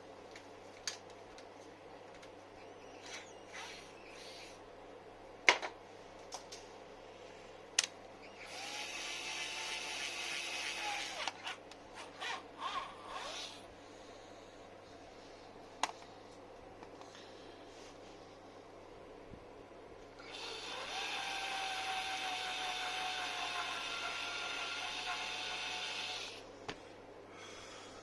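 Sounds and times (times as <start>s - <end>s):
small power tool motor: 8.2s - 11.4s, 20.2s - 26.4s.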